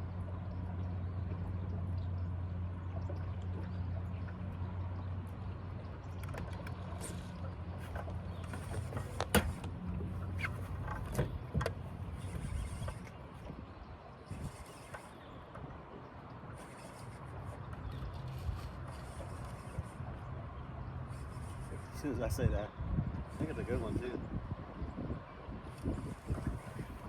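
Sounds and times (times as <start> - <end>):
electric trolling motor humming: 0.0 - 27.0
sharp clicks and knocks: 7.9 - 9.8.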